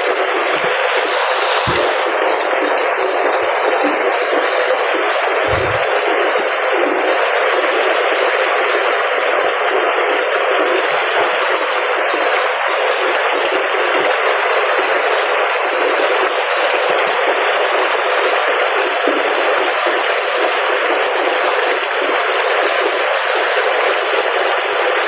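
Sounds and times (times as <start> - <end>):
water rushing: 0.0 - 13.4.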